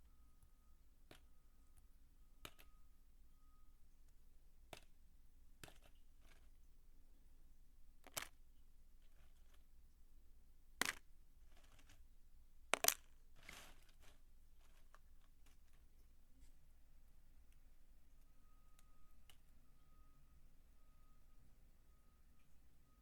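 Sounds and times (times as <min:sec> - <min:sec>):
dry soap crunching: 0:08.0 - 0:08.4, 0:10.8 - 0:12.1, 0:12.7 - 0:16.0
crumbly rustle: 0:11.4 - 0:12.1, 0:12.8 - 0:16.6.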